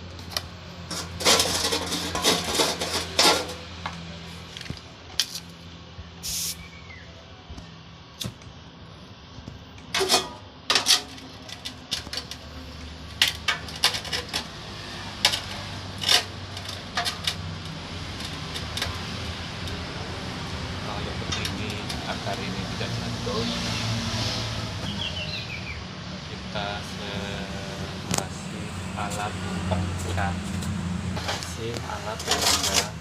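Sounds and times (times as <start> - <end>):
metal tools clinking on pipes: 9.9 - 12.5, 21.2 - 22.2.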